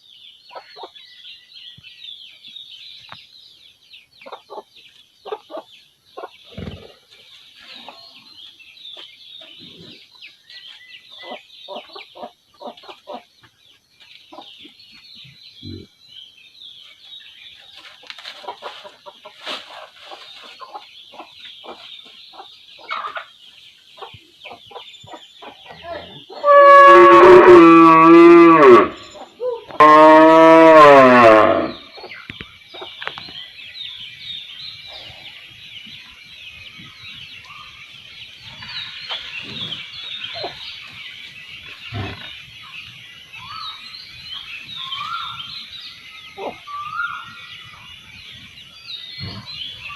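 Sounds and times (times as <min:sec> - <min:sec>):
small birds chirping: 0:00.0 - 0:26.5, 0:28.9 - 0:29.8, 0:31.6 - 0:49.9
chickens clucking: 0:04.2 - 0:15.0, 0:17.6 - 0:26.4, 0:31.9 - 0:33.5, 0:38.4 - 0:42.8
cow mooing: 0:25.8 - 0:29.0, 0:29.8 - 0:31.8.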